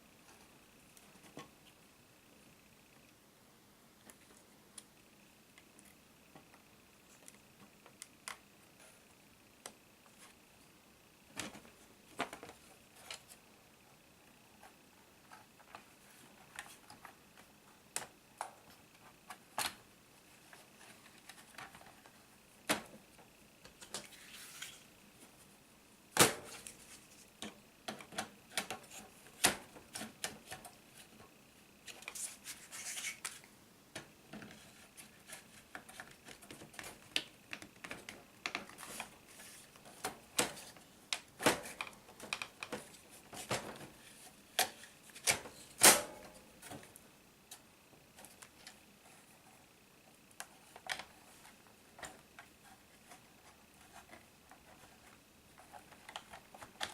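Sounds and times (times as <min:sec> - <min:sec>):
clicks and scraping of laptop parts: 0:26.2 - 0:47.6, 0:50.4 - 0:56.9.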